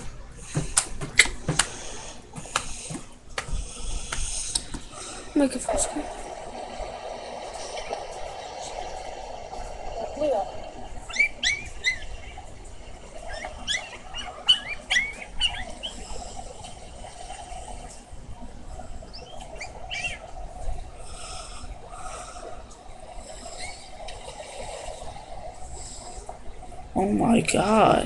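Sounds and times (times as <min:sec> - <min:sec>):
steady hiss: 0:00.0 - 0:28.0
puppies whimpering and yelping: 0:11.0 - 0:16.5, 0:19.1 - 0:20.3.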